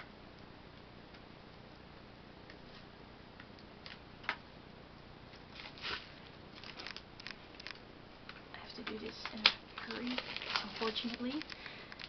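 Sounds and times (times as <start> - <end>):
plastic wrapping crinkling: 5.5 - 7.8, 8.6 - 12.0.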